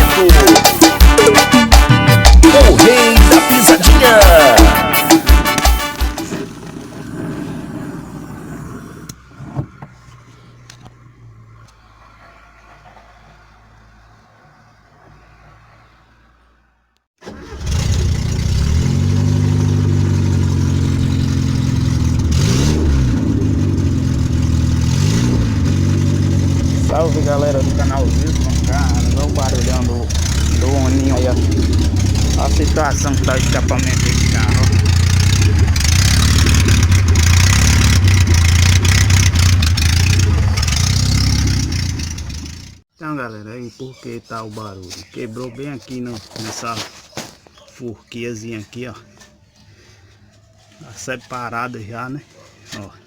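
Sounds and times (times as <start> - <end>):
car engine through broken exhaust: 4.1 - 10.7, 17.2 - 42.8.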